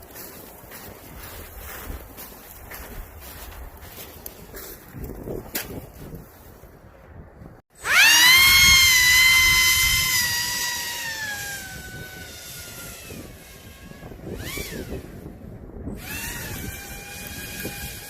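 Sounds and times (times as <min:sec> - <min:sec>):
airboat electric motor whining: 0:07.8 - 0:15.3, 0:16.0 - 0:18.0.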